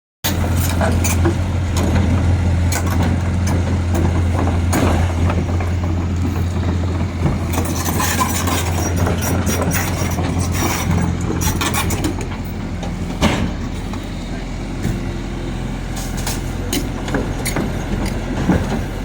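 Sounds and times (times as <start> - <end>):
excavator diesel engine droning: 0.2 - 19.0
short knocks and clanks: 0.4 - 14.1.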